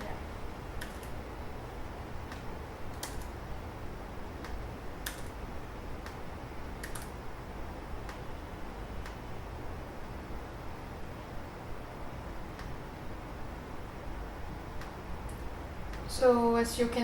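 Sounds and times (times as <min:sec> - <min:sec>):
steady low hum: 0:00.0 - 0:17.0
keyboard keys clicking: 0:04.4 - 0:05.3, 0:06.8 - 0:07.1.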